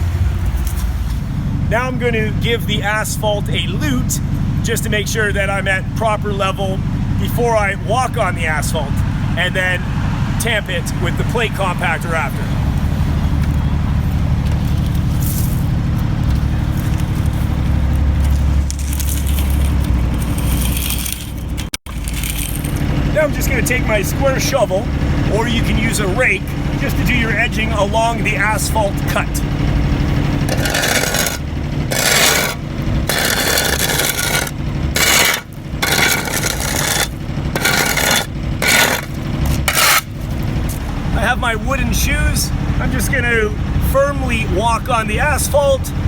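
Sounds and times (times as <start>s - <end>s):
heavy machine engine droning: 0.0s - 46.0s
lute scraping across asphalt: 10.4s - 24.8s, 25.4s - 41.0s.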